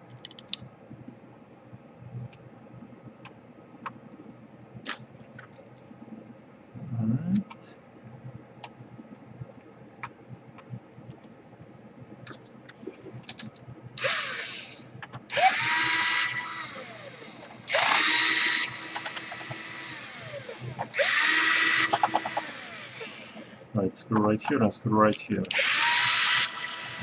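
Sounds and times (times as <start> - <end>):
electric screwdriver motor whine: 14.0 - 23.6, 25.5 - 27.0.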